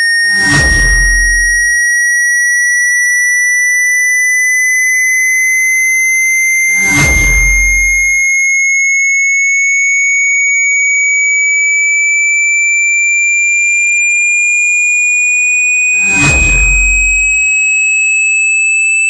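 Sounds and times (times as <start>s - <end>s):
high pure tone gliding upward: 0.3s - 1.8s, 6.7s - 8.2s, 16.0s - 17.6s
low thump: 0.4s - 1.8s, 6.8s - 8.2s, 16.0s - 17.4s.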